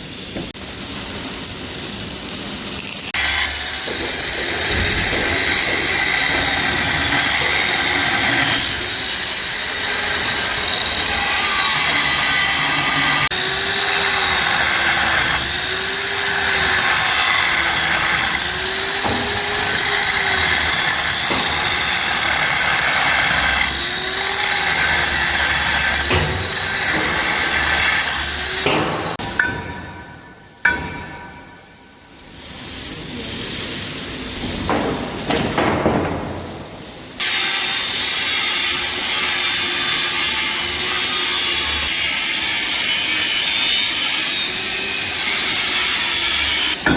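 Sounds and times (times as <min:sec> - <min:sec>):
power tool on steel: 0:00.4 - 0:29.6, 0:31.7 - 0:46.9.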